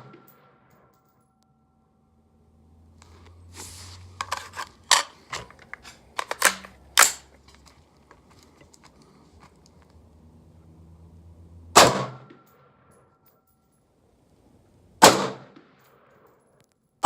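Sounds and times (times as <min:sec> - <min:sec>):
gunshots: 0:11.8 - 0:12.5, 0:15.0 - 0:15.8
loud gunshot: 0:11.8 - 0:12.5, 0:15.0 - 0:15.7.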